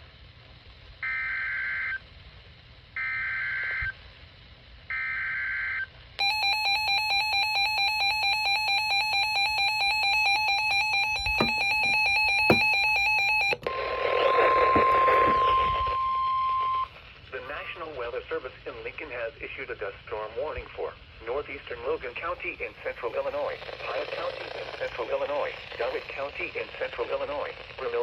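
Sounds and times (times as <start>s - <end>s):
steady single tone with hiss: 11.0s - 20.1s.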